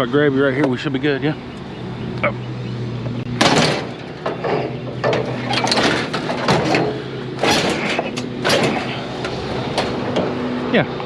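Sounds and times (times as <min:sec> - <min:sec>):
steady low hum: 0:00.0 - 0:11.0
metal clanks and scrapes: 0:03.4 - 0:10.4.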